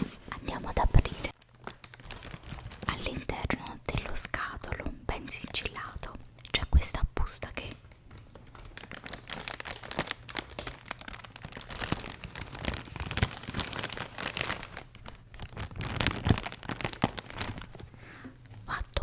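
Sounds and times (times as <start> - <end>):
packaging crinkling: 0.5 - 4.3, 7.6 - 18.9.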